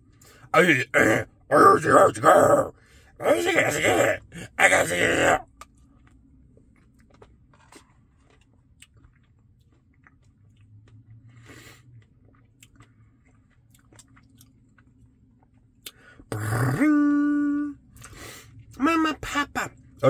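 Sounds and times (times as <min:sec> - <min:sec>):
wet chewing and mouth clicks: 0:05.5 - 0:11.3, 0:11.9 - 0:16.0.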